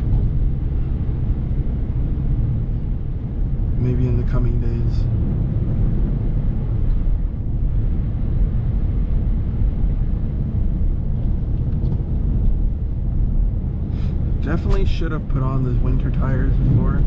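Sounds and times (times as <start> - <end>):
car engine hum: 0.0 - 17.0.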